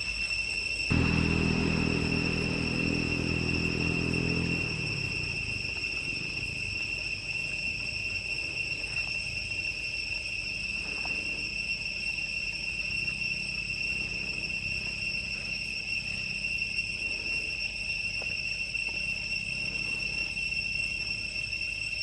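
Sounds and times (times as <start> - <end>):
insects droning: 0.0 - 22.0
low background rumble: 0.9 - 8.8.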